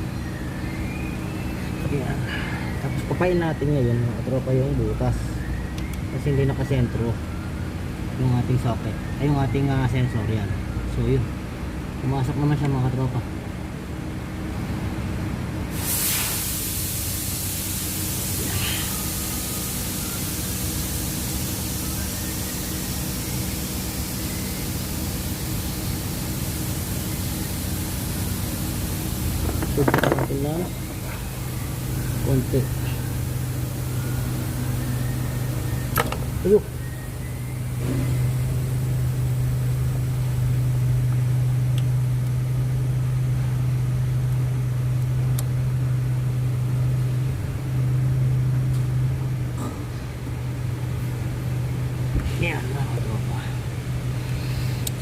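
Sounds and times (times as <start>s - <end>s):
low machine hum: 0.0s - 55.0s
steady hiss: 15.7s - 35.6s.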